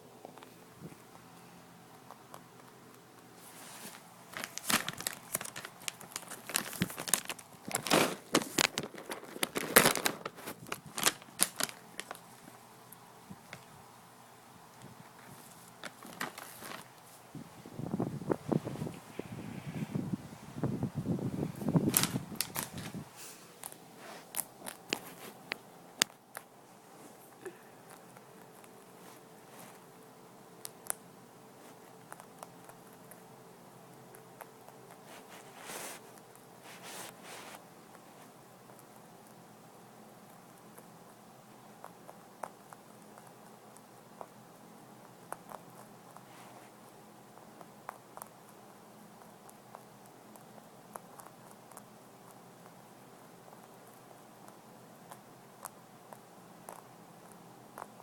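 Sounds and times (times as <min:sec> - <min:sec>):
rabbit chewing dry hay: 0:00.1 - 0:20.0, 0:20.9 - 0:58.0
hay rustling: 0:36.6 - 0:37.6.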